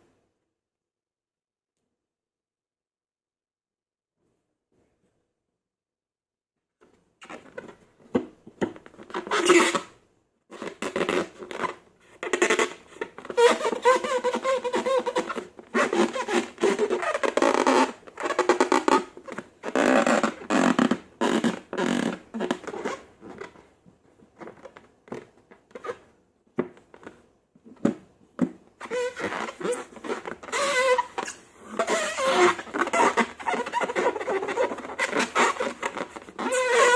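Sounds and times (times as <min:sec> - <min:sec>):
rubbery squelches and squeaks: 0:08.8 - 0:09.9, 0:10.5 - 0:23.7, 0:24.4 - 0:26.1, 0:28.8 - 0:36.9.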